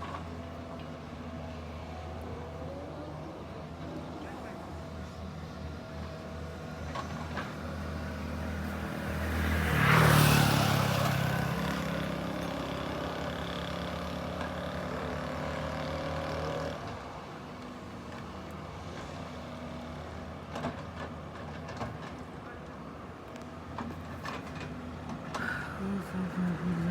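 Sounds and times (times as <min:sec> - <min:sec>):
excavator diesel engine running: 0:00.0 - 0:07.5, 0:17.6 - 0:26.9.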